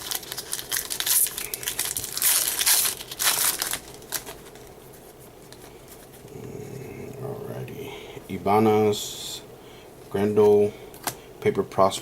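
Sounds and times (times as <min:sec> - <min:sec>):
wrapper crinkling and tearing: 0:00.0 - 0:04.8.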